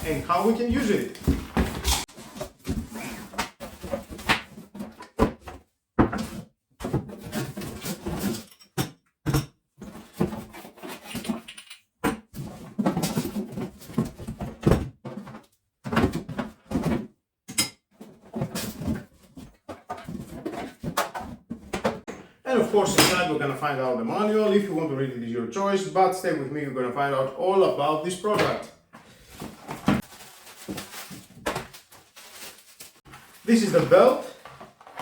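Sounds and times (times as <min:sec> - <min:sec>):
cardboard box packaging rustling: 0:29.2 - 0:35.0.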